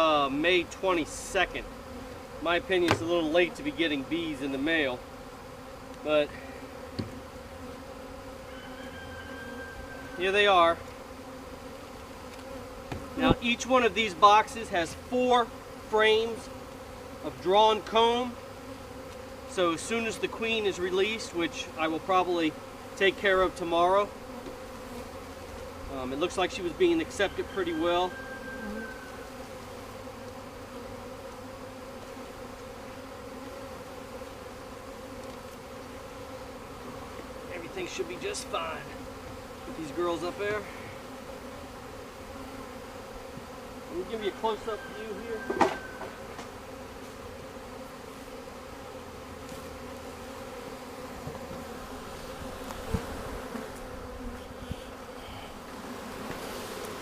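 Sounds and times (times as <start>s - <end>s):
bees buzzing: 0.0s - 57.0s
faint knock: 6.9s - 7.2s, 45.5s - 46.5s.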